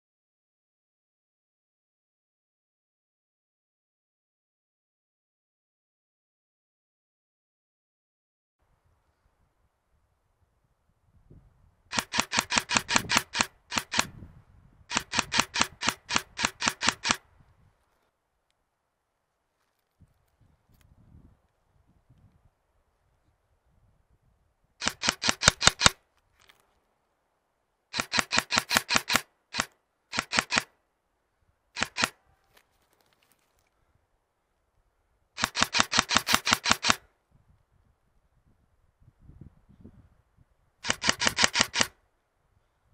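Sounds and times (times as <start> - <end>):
airsoft gun rapid shots: 11.9 - 14.1, 14.9 - 17.2, 24.8 - 26.0, 27.9 - 30.7, 31.8 - 32.2, 35.4 - 37.0, 40.8 - 42.0.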